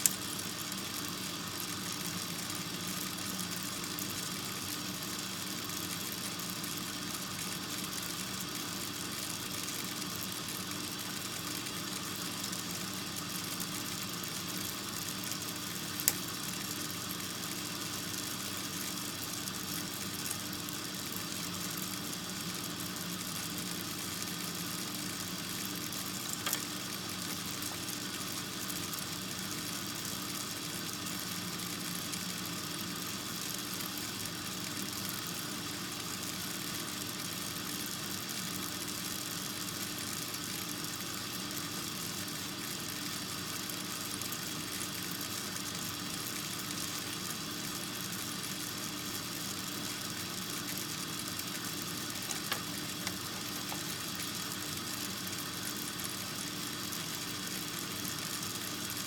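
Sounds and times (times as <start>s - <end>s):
mechanical hum with hiss: 0.0s - 59.0s.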